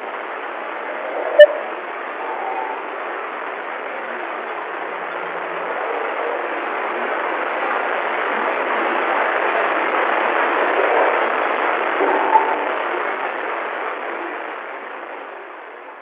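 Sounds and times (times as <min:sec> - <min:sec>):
hissing scratchy static: 0:00.0 - 0:16.0
short sharp blip: 0:01.4 - 0:01.6.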